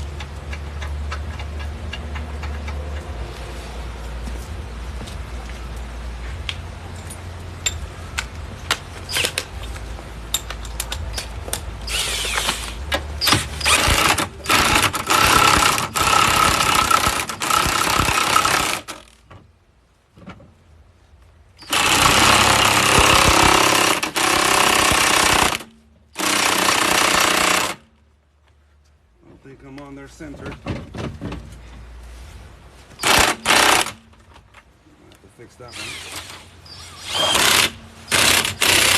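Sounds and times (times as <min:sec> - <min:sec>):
light clicks of metal parts: 0:05.4 - 0:11.8
impact wrench hammering: 0:13.2 - 0:19.0, 0:21.6 - 0:27.8.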